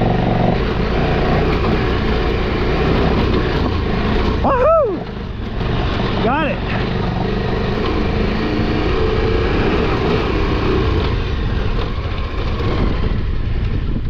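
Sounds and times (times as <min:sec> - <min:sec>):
motorcycle engine under load: 0:00.0 - 0:14.0.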